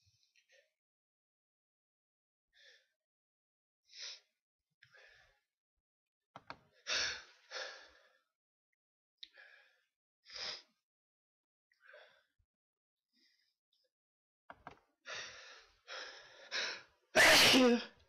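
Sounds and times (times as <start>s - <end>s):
person sneezing: 17.2s - 17.9s.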